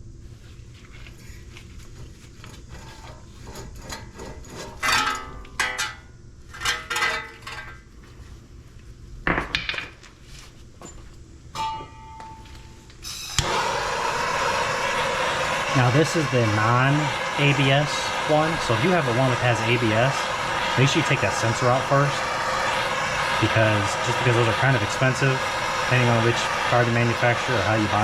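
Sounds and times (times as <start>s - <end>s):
loud rushing noise: 13.4s - 28.0s.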